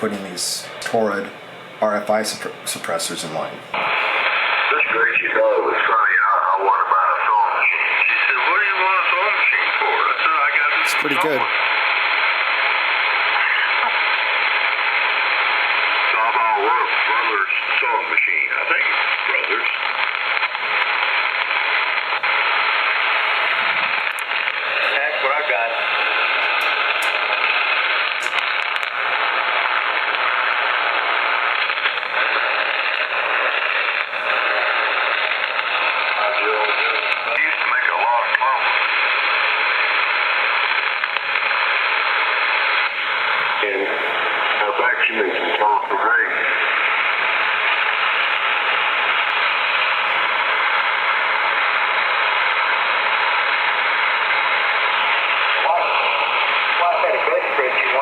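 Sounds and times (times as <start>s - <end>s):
radio static hiss: 0.0s - 58.0s.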